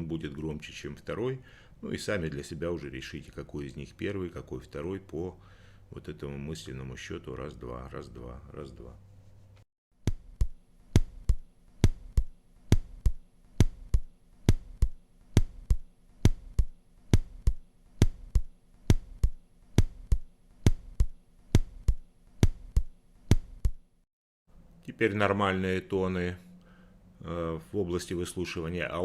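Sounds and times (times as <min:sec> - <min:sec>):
heartbeat lub-dub: 0:10.1 - 0:23.9.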